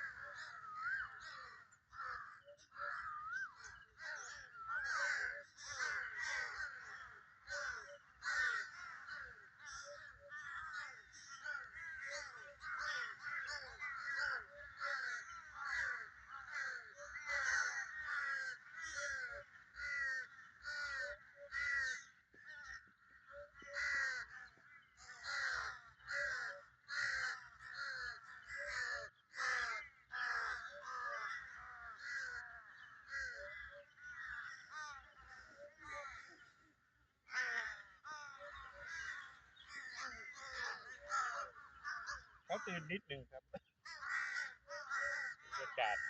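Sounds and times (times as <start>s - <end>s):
crows cawing: 0.0s - 46.0s.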